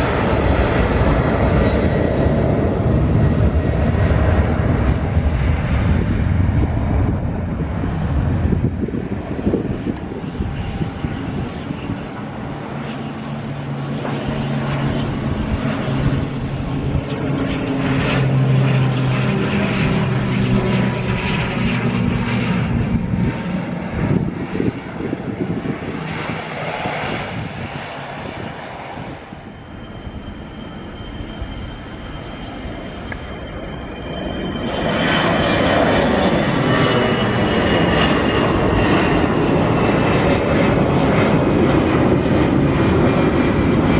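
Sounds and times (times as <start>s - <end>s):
airplane engines droning: 0.0s - 43.9s.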